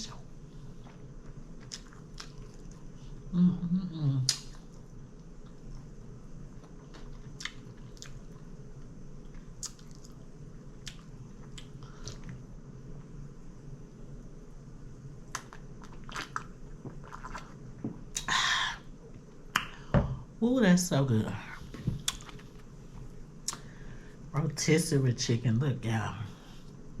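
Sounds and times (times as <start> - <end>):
chewing and biting food: 0.8 - 3.0, 6.6 - 8.5, 9.2 - 12.4, 15.3 - 18.3
wet mouth clicks: 4.2 - 4.6, 23.4 - 23.6.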